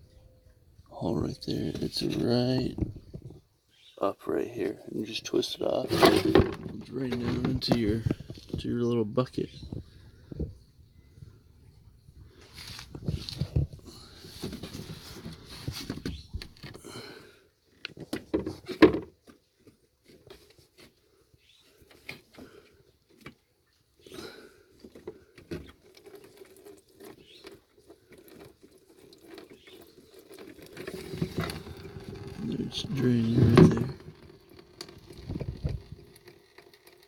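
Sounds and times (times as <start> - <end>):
hands working under a car: 5.8 - 8.6, 12.4 - 16.8, 17.7 - 37.0.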